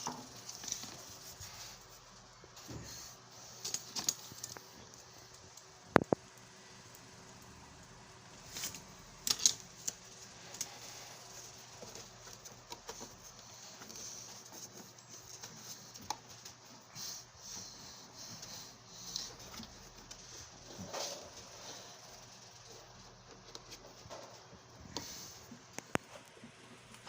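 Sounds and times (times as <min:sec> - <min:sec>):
plastic parts rustling: 0:02.6 - 0:05.2, 0:08.4 - 0:16.9
plastic parts clicking: 0:08.6 - 0:10.0.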